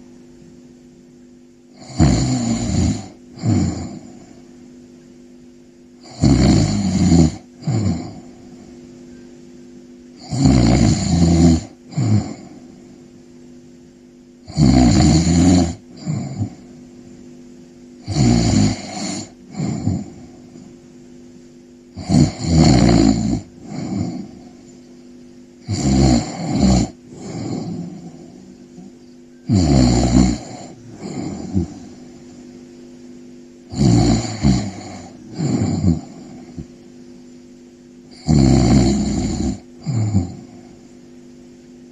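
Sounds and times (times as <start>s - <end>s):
person snoring: 1.7s - 4.4s, 6.0s - 8.8s, 10.2s - 12.9s, 14.4s - 16.8s, 18.0s - 20.8s, 21.9s - 24.6s, 25.6s - 28.9s, 29.5s - 32.4s, 33.7s - 36.8s, 38.1s - 40.9s.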